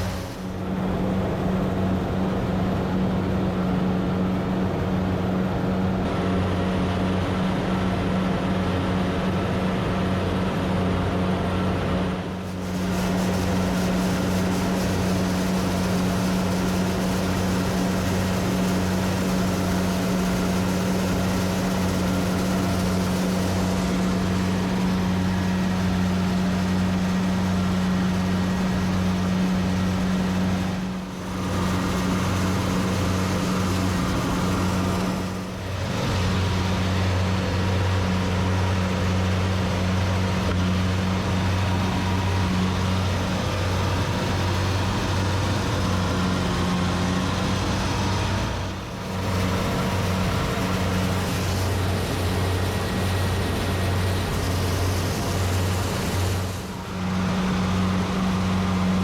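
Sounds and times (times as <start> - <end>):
diesel engine humming: 0.0 - 59.0.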